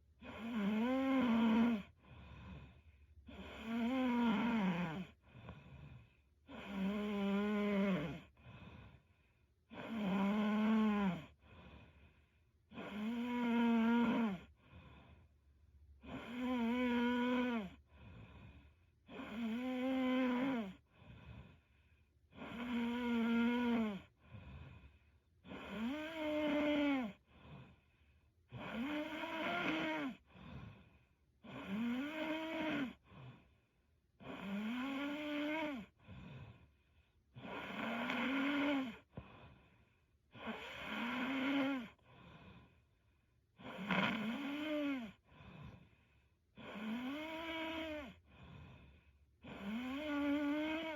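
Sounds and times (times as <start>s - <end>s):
woman snoring: 0.2s - 9.0s, 9.6s - 12.1s, 12.7s - 15.2s, 16.0s - 21.7s, 22.3s - 27.8s, 28.5s - 33.5s, 34.2s - 36.7s, 37.3s - 42.8s, 43.6s - 50.9s
soft breath: 1.9s - 3.3s, 5.1s - 6.4s, 8.2s - 9.6s, 11.3s - 12.6s, 24.0s - 25.3s, 30.2s - 31.2s, 35.9s - 37.3s, 39.0s - 40.2s, 41.9s - 43.4s, 48.2s - 49.3s.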